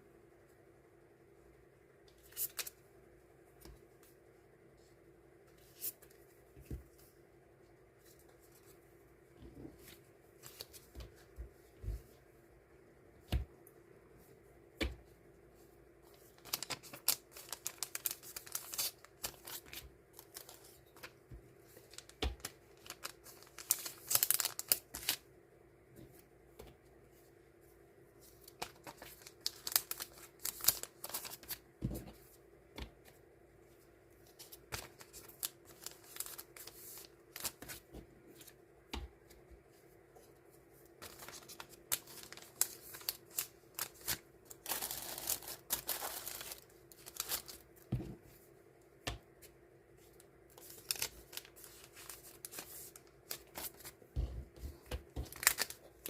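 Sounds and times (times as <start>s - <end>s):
faint steady hum: 0.0s - 56.0s
packaging rustling: 16.4s - 21.2s, 21.8s - 25.2s, 28.5s - 31.6s, 41.0s - 47.7s, 55.2s - 56.0s.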